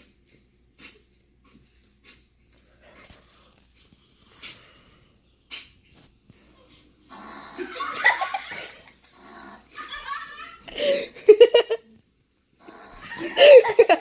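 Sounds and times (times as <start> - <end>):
person laughing hard: 9.7 - 11.9, 13.0 - 14.0.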